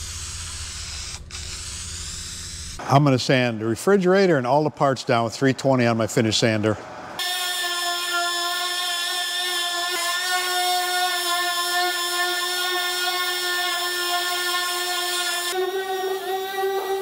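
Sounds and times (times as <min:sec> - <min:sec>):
electric sander whining: 0:07.2 - 0:17.0.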